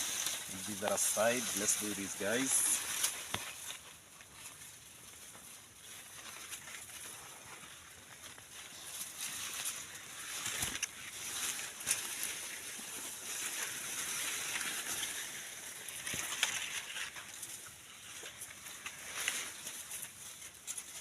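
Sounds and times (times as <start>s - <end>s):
maize plants rustling: 0.0s - 21.0s
stalks snapping: 2.8s - 3.8s, 10.3s - 17.5s.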